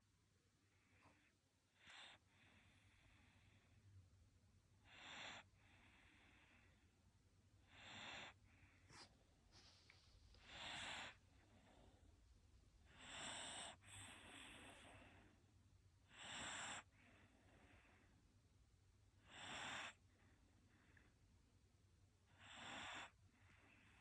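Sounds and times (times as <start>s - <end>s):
dog snoring breaths: 0.9s - 3.7s, 4.8s - 6.8s, 7.6s - 12.2s, 12.8s - 15.4s, 16.0s - 18.1s, 19.2s - 20.2s, 22.3s - 24.0s.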